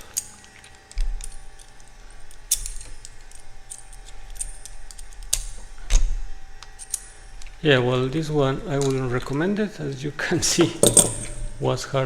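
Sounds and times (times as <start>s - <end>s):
screwdriver bits clicking: 6.6s - 7.5s.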